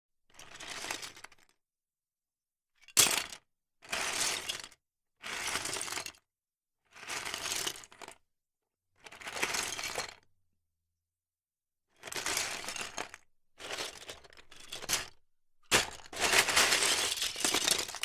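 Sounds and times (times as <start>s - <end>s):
plastic bricks clattering: 12.4s - 18.0s.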